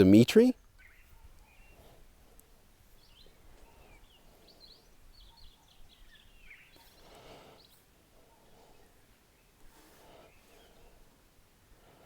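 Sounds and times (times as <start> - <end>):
faint bird chirps: 0.6 - 11.1.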